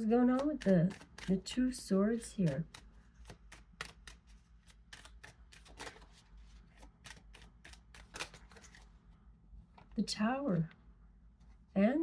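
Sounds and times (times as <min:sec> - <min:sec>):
cards being shuffled: 0:00.3 - 0:01.5, 0:02.2 - 0:08.9.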